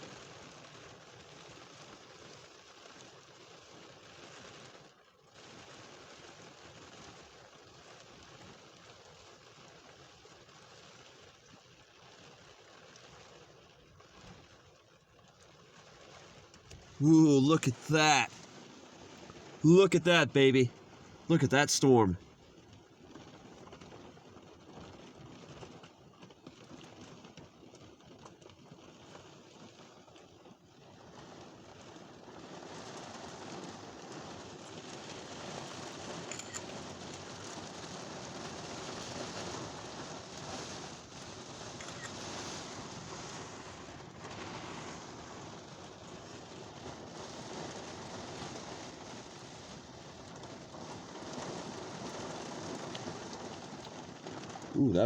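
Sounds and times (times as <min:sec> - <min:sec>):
heavy rain hissing: 0:16.8 - 0:22.2, 0:32.5 - 0:55.0.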